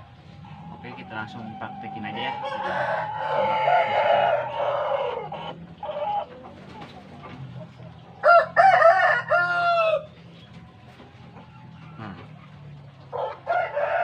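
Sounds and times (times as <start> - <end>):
rooster crowing: 0.9 - 5.3, 8.2 - 10.1, 13.1 - 14.0.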